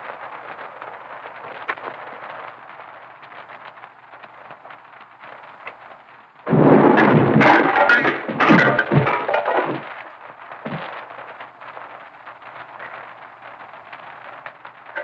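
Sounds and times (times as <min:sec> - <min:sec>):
old film soundtrack hiss: 0:00.0 - 0:15.0
explosion crashing and breaking: 0:06.4 - 0:11.8, 0:14.4 - 0:15.0.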